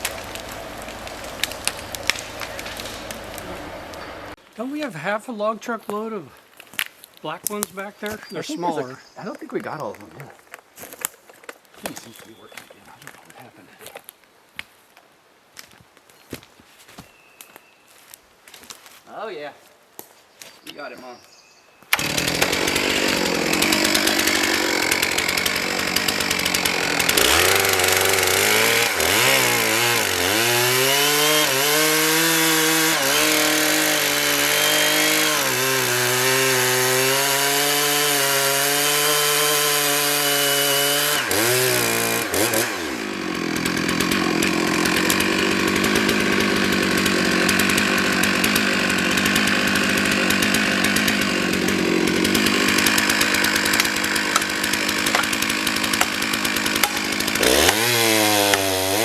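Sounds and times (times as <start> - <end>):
chainsaw cutting wood: 0.0 - 4.4, 21.9 - 59.0.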